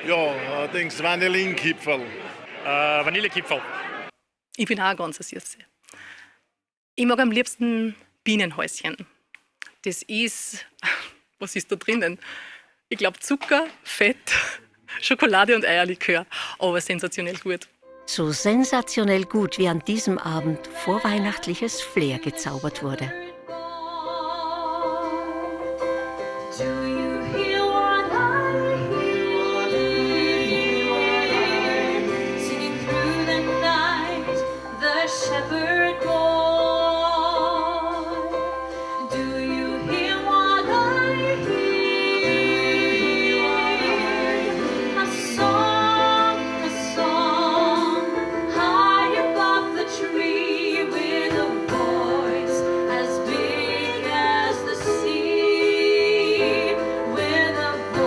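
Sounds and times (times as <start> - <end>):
instrumental accompaniment: 17.8 - 58.0
woman singing with vibrato: 18.4 - 25.4, 26.6 - 38.4, 39.0 - 58.0.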